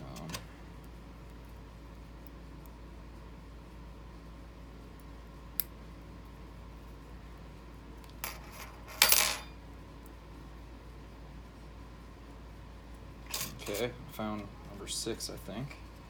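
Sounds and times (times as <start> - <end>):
metal lock parts clinking: 13.3 - 13.9.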